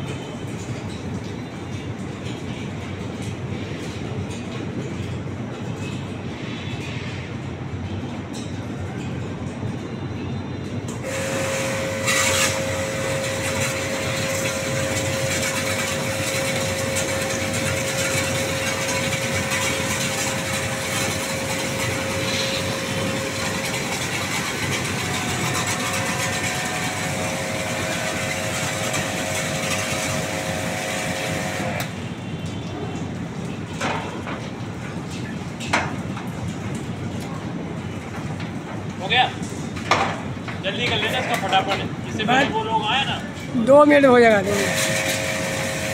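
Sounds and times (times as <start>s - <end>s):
machine motor hiss and whine: 11.0s - 31.9s.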